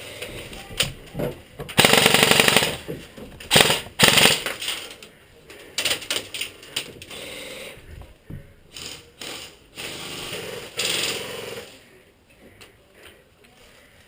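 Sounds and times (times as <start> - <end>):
airsoft guns firing full auto: 1.8 - 2.9, 3.5 - 4.8, 8.8 - 11.8.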